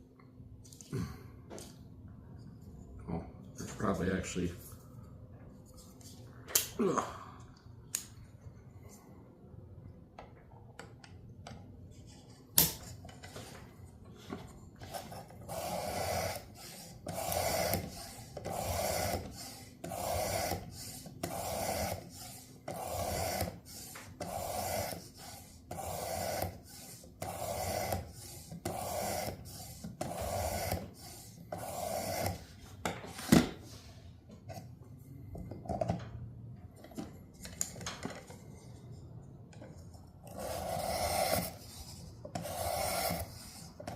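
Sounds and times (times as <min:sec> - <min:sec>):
knife scraping on sharpener: 0:15.5 - 0:32.4, 0:40.3 - 0:41.6, 0:42.4 - 0:43.9.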